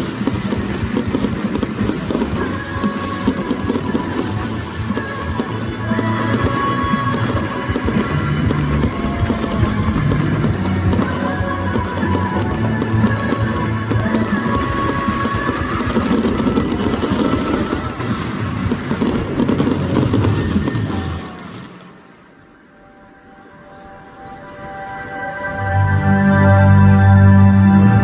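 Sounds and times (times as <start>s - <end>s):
loud music: 0.0s - 21.8s, 24.2s - 28.0s
fireworks bursting: 0.0s - 22.4s.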